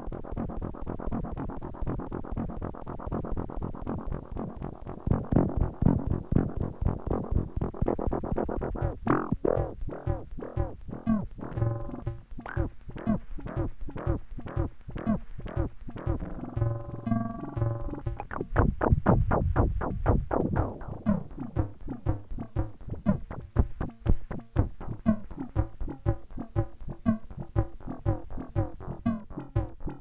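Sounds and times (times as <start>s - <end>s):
synthesizer short repeated notes: 0.2s - 30.0s
low held synth tone: 11.4s - 12.6s, 15.5s - 18.4s.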